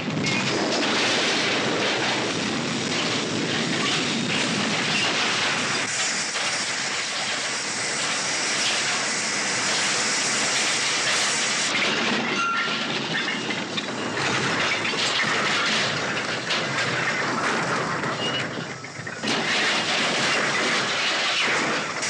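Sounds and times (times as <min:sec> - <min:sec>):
train rumbling clatter: 0:00.0 - 0:22.0
thin metallic squeal: 0:12.4 - 0:12.7.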